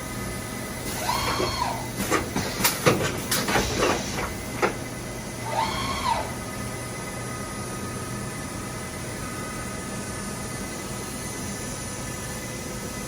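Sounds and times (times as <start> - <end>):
machining center hum: 0.0 - 13.0
sharp knocks and clanks: 2.0 - 4.9
short rising and falling whines: 5.4 - 6.7.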